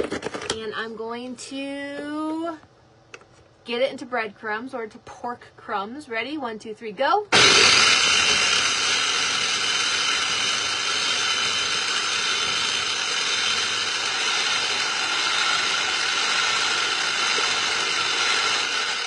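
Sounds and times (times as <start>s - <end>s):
electric food chopper grinding: 7.3s - 19.0s.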